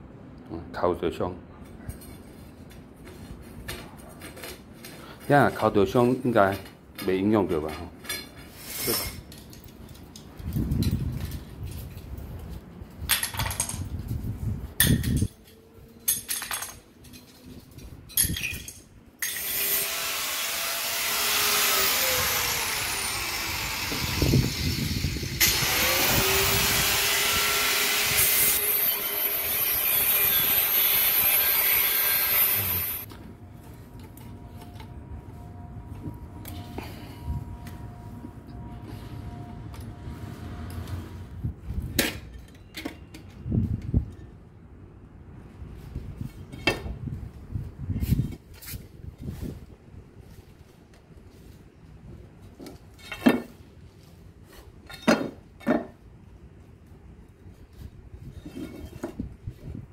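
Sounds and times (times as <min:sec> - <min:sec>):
power tool cutting: 0:19.3 - 0:33.1.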